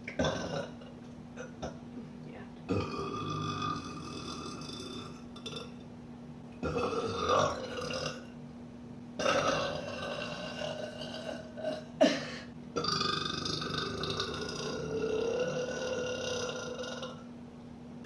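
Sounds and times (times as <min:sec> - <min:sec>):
woman burping: 0:00.1 - 0:00.8, 0:09.2 - 0:17.2.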